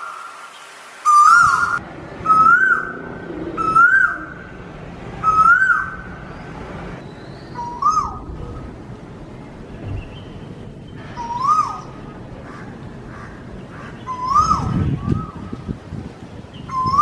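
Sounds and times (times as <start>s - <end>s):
steady background noise: 0.0s - 17.0s
bird whistled call: 1.1s - 2.9s, 5.2s - 6.0s, 11.2s - 12.0s, 14.1s - 15.4s, 16.7s - 17.0s.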